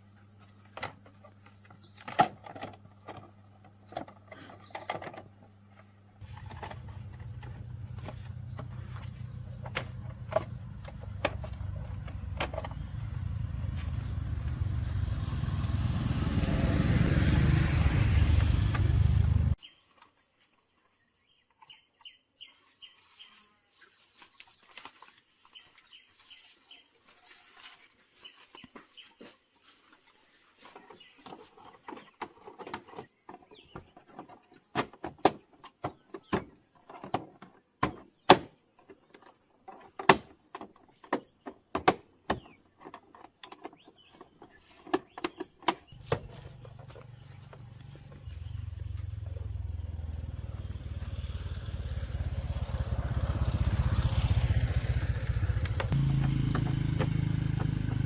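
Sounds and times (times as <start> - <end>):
motor humming: 55.0 - 58.0.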